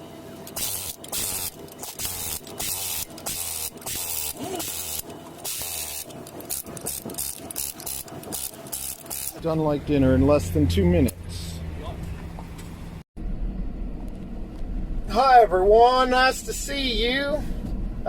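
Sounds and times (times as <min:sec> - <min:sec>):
compressed air hissing bursts: 0:00.6 - 0:06.1.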